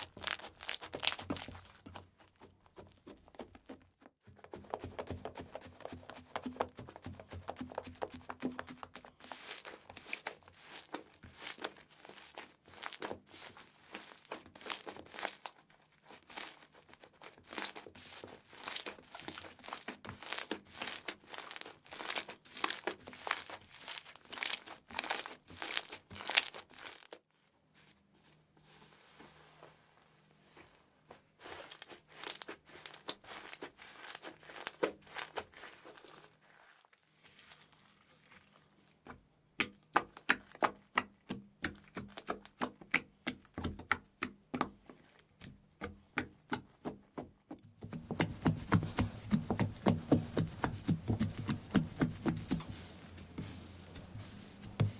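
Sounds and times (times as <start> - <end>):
slime squeezed by hand crackling: 0.0 - 1.8, 31.5 - 39.1.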